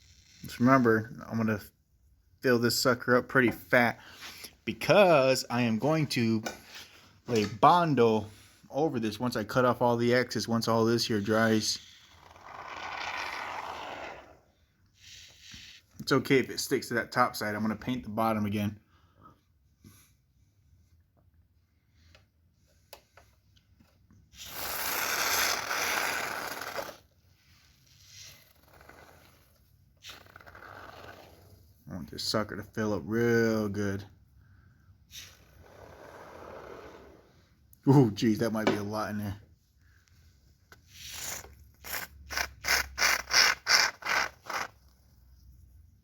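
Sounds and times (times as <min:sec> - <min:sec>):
expanding foam can bursts: 0:11.2 - 0:16.0, 0:24.3 - 0:31.6, 0:40.8 - 0:45.0.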